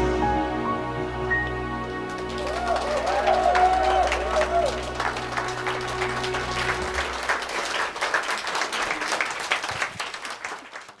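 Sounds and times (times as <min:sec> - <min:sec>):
sustained music chord: 0:00.0 - 0:07.4
audience applauding: 0:01.4 - 0:11.0.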